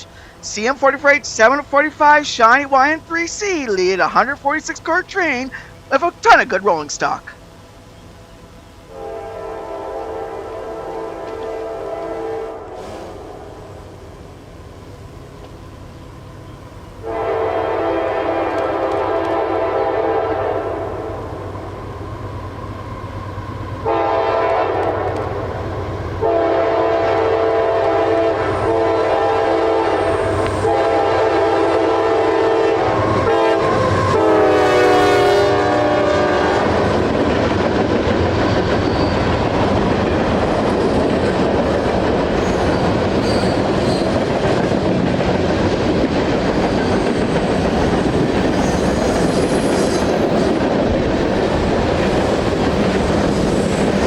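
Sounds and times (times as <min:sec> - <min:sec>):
train cars rumbling and clacking: 0:00.0 - 0:54.0
locomotive horn blasts: 0:08.9 - 0:13.6, 0:17.0 - 0:21.1, 0:23.8 - 0:25.3, 0:26.2 - 0:36.9.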